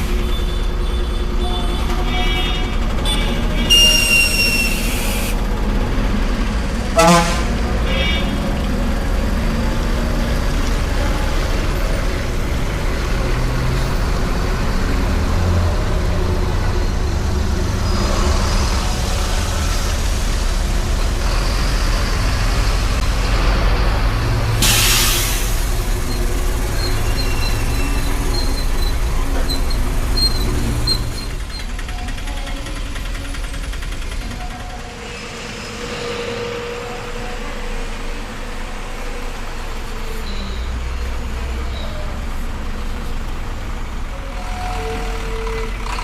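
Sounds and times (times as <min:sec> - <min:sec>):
heavy vehicle engine rumbling: 0:00.0 - 0:46.0
air brakes hissing: 0:03.8 - 0:05.5, 0:24.6 - 0:26.3.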